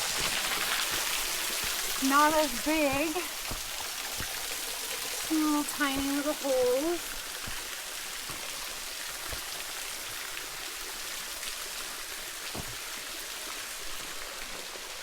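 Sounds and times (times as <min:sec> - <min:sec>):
waterfall splashing onto rock: 0:00.0 - 0:15.0
faint soft knocks: 0:12.5 - 0:12.8.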